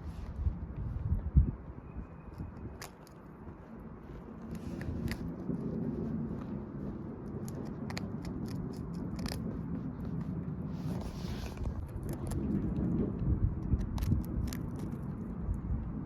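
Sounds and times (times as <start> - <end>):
wind rumbling on microphone: 0.0 - 16.0
rabbit crunching a treat: 2.3 - 16.0.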